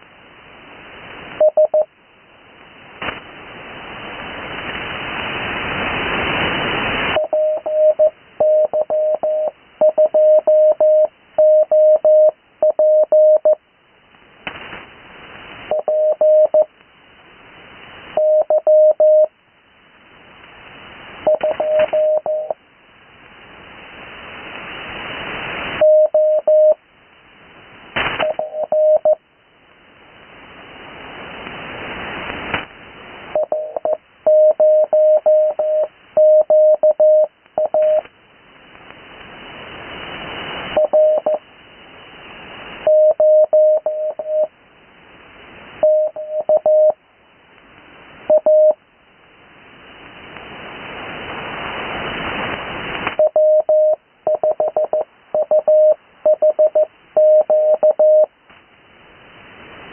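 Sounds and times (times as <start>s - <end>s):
morse code tone: 1.4s - 1.9s, 7.2s - 13.6s, 15.7s - 16.7s, 18.2s - 19.3s, 21.3s - 22.6s, 25.8s - 26.8s, 28.2s - 29.2s, 33.4s - 38.1s, 40.8s - 41.4s, 42.9s - 44.5s, 45.8s - 47.0s, 48.3s - 48.8s, 53.2s - 58.3s
radio band hiss: 2.4s - 11.0s, 23.6s - 29.1s, 30.0s - 36.2s, 36.8s - 43.4s, 49.3s - 53.2s.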